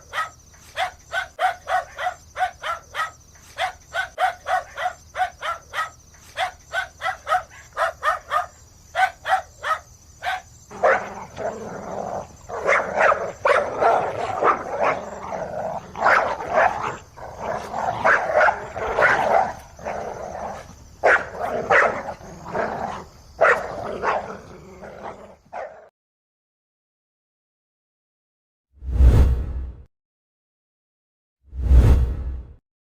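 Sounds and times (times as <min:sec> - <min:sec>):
dogs barking: 0:00.0 - 0:25.9.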